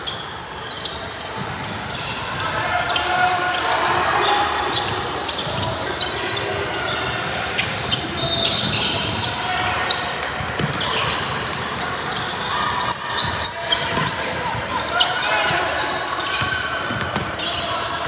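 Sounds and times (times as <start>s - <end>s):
hum of crowd voices: 0.0s - 18.0s
basketball bouncing on court: 8.6s - 14.8s, 16.2s - 17.9s.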